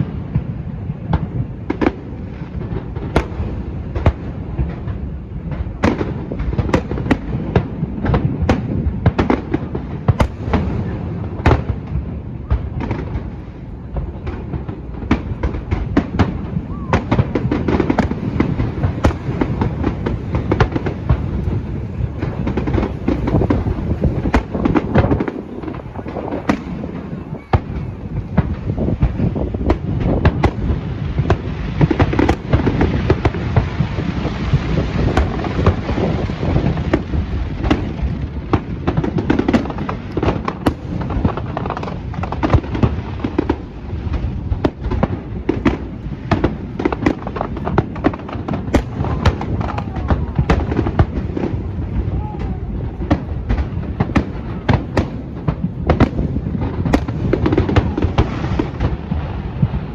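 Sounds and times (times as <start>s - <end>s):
fireworks bangs and pops: 0.0s - 59.9s
fireworks crackling: 0.0s - 59.9s
rumbling fireworks boom: 0.0s - 59.9s.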